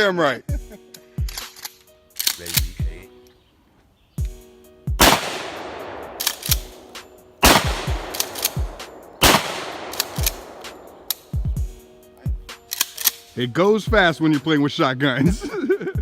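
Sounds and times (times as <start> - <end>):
shotgun blasts with echo: 5.0 - 11.8.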